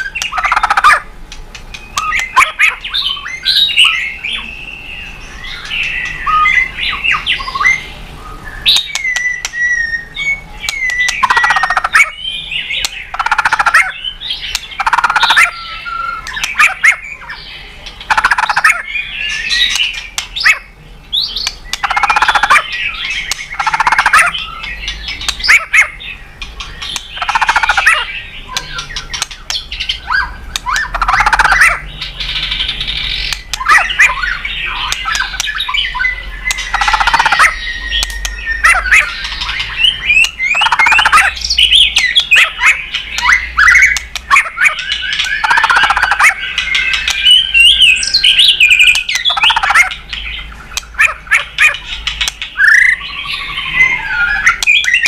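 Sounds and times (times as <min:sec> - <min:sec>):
songbird singing varied phrases: 0:00.0 - 0:55.0.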